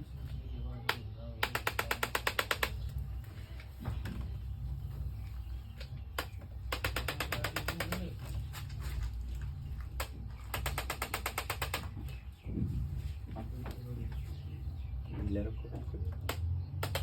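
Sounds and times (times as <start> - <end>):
rapid mechanical clicking: 0.9 - 3.0, 6.1 - 8.3, 9.9 - 12.2, 16.2 - 17.0.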